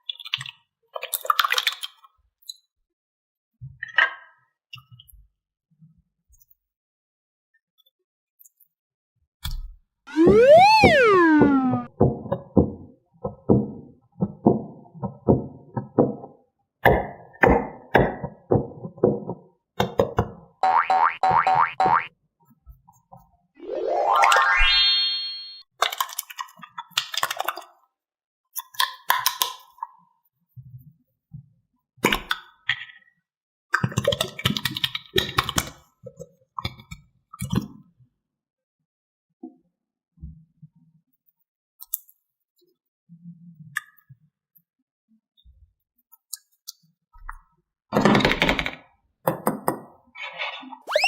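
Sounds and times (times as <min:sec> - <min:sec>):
falling whistle sound effect: 0:10.1 - 0:11.9, 0:23.6 - 0:25.6
rising chirp effects: 0:10.1 - 0:11.9, 0:23.6 - 0:25.6.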